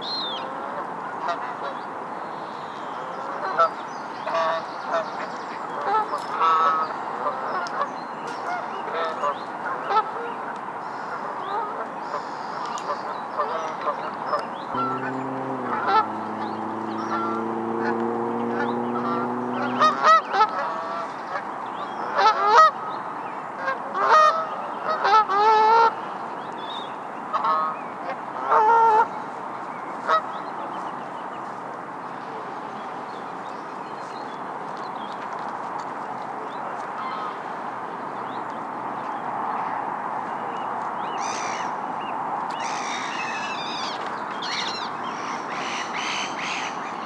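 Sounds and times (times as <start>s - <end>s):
geese honking: 14.7s - 21.0s.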